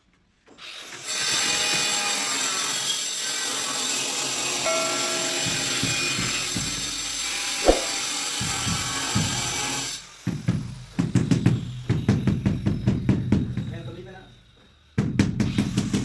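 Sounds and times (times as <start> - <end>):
sharp click: 7.6 - 8.0.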